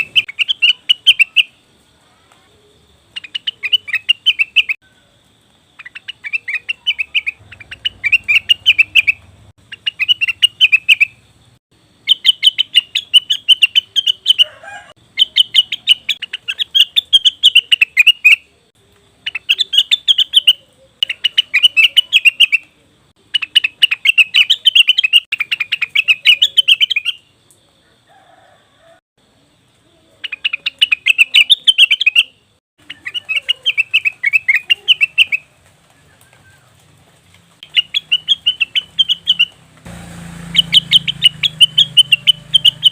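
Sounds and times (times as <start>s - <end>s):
bird calling in stuttering high notes: 40.4s - 42.9s.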